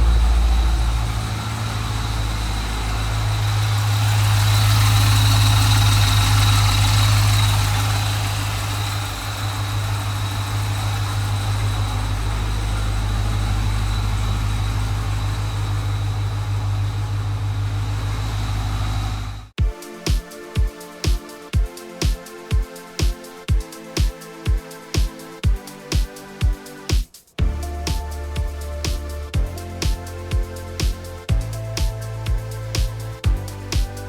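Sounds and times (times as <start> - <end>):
car engine idling: 0.0 - 19.7, 27.4 - 34.0.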